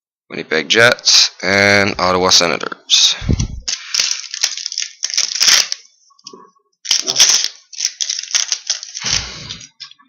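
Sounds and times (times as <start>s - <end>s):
cards rustling: 3.4s - 5.9s, 6.8s - 10.0s
foil pack crinkling and tearing: 3.6s - 5.9s, 6.8s - 9.8s.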